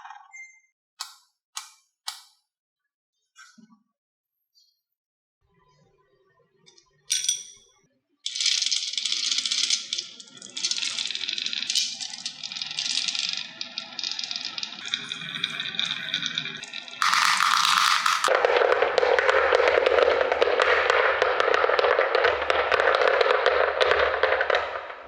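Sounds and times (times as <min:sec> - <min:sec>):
marbles rattling down wooden track: 0:08.3 - 0:25.0.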